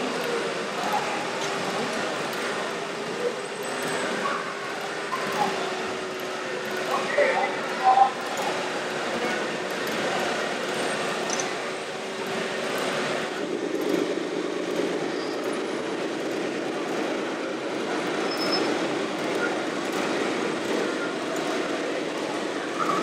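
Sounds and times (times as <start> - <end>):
steady mechanical rattle: 0.0 - 23.0.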